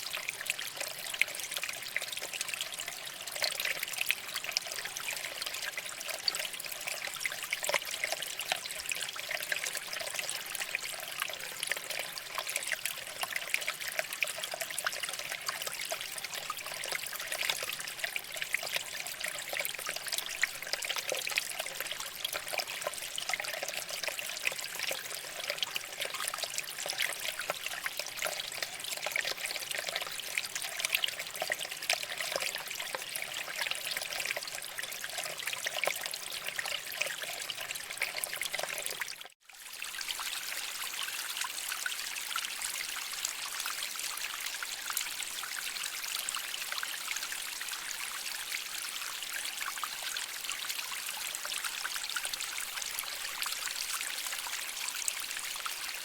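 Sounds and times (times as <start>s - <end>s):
water trickling over rocks: 0.0s - 56.0s.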